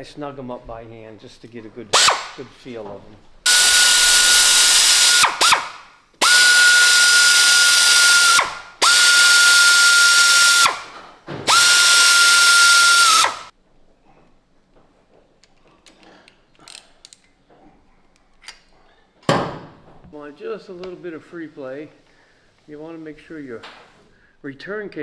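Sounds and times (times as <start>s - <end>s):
power driver whining: 1.9s - 2.5s, 3.4s - 13.5s.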